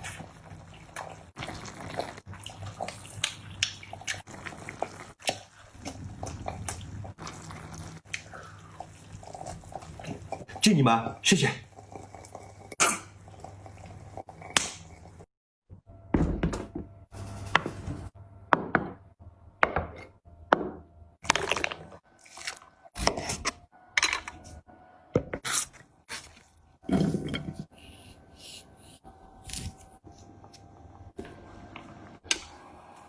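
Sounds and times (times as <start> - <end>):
close-miked eating and chewing: 0.0 - 15.3.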